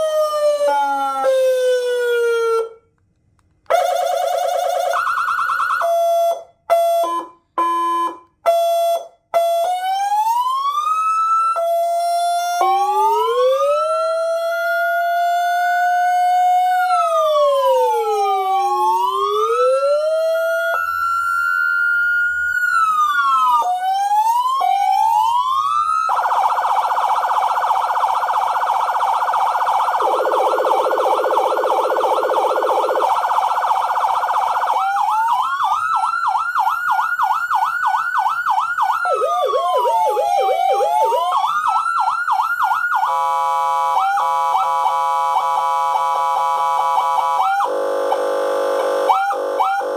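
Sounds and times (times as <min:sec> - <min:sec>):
electronic siren cycling tones: 0:10.7 - 0:49.9
steady blaring horn tone: 0:43.1 - 0:49.9.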